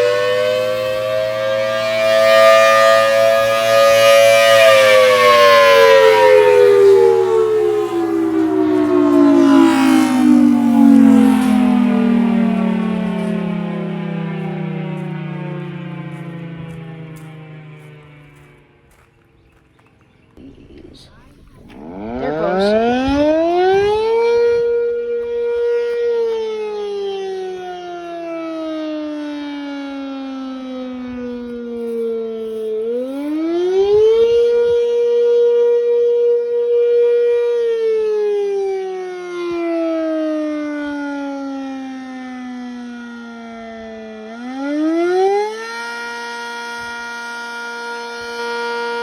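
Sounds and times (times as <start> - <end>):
warning siren winding up and down: 0.0 - 18.7, 21.4 - 49.0.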